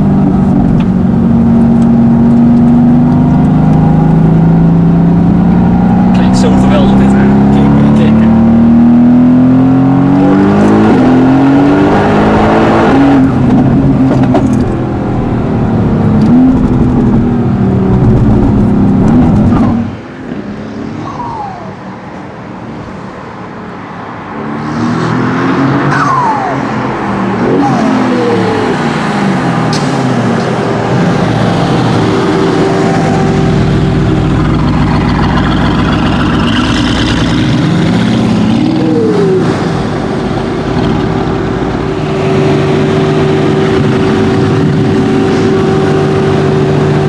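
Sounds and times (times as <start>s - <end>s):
car engine accelerating hard: 0.0s - 21.6s, 24.2s - 47.0s
turbo whistles spooling down: 21.0s - 21.9s, 25.9s - 26.8s.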